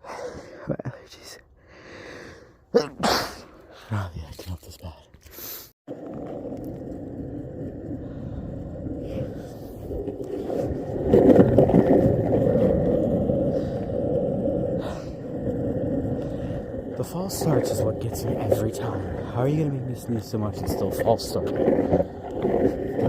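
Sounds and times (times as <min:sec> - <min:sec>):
skateboard wheels rolling on pavement: 0:05.9 - 0:23.0.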